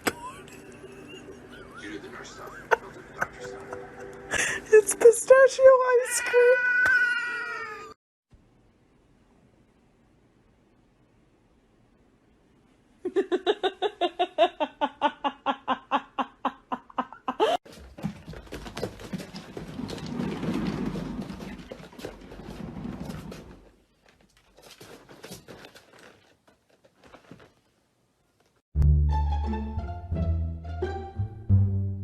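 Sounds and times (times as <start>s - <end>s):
rustling and handling noise: 17.7s - 28.6s.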